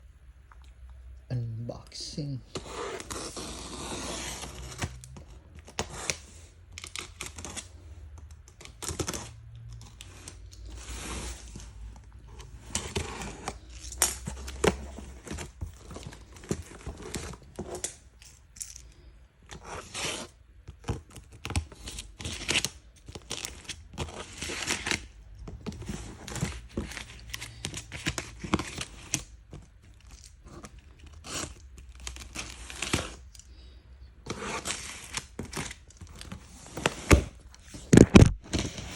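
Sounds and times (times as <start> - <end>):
packaging crinkling and tearing: 34.3 - 38.9.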